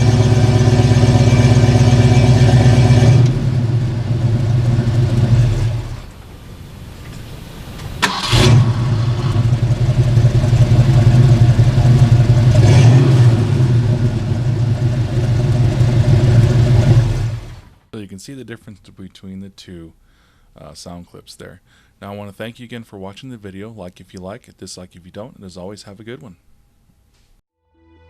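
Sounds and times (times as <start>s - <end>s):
car engine running: 0.0s - 17.8s
engine starting with a sharp crack: 7.0s - 9.6s.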